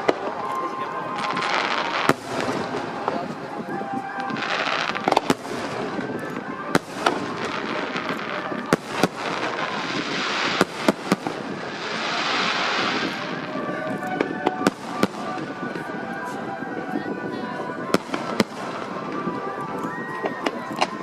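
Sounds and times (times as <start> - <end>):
crackling hiss: 0.0 - 16.4
fireworks bursting: 0.0 - 21.0.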